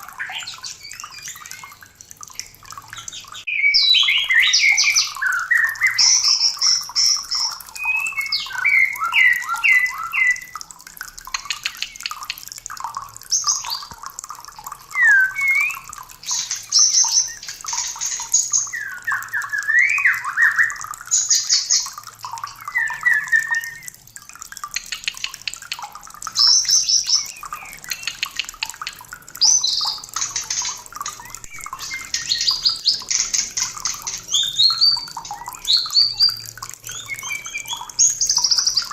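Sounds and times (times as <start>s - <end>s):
bird singing whistled phrases: 3.0s - 10.6s, 14.9s - 21.9s, 22.5s - 24.0s, 30.6s - 33.1s, 34.3s - 38.9s.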